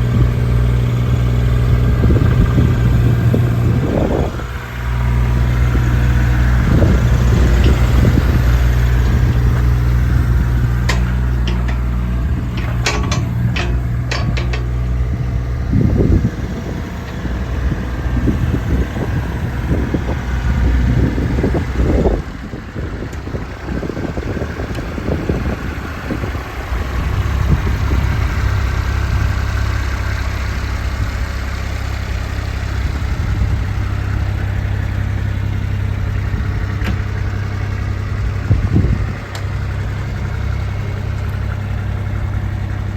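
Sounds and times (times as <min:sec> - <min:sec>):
excavator diesel engine running: 0:00.0 - 0:42.9
sharp metallic clinks: 0:07.4 - 0:15.3.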